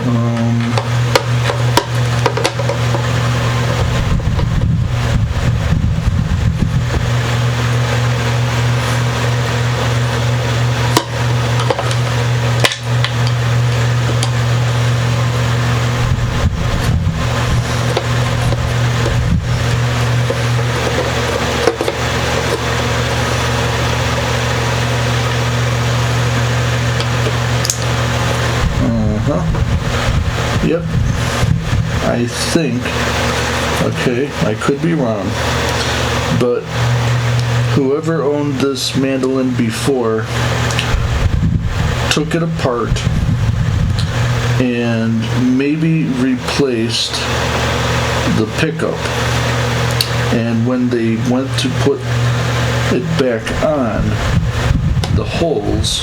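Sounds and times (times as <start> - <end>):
low hum: 0.0 - 56.0
mandolin handling clicks and knocks: 0.6 - 3.1, 17.8 - 22.8.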